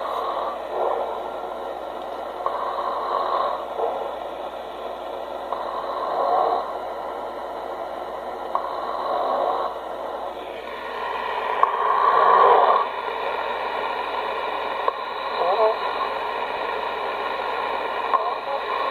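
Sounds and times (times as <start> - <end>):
man snoring: 0.0 - 1.1, 2.4 - 4.0, 5.5 - 6.8, 8.5 - 9.8, 10.6 - 13.1, 14.9 - 16.1, 18.0 - 18.9.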